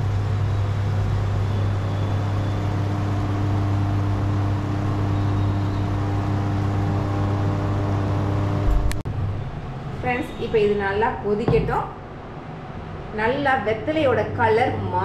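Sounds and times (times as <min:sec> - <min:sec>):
electric motor humming: 0:02.0 - 0:09.0.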